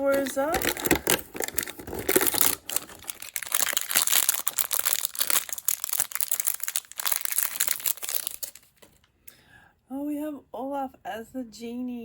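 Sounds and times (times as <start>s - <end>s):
plastic packaging crinkling: 0.0s - 9.1s.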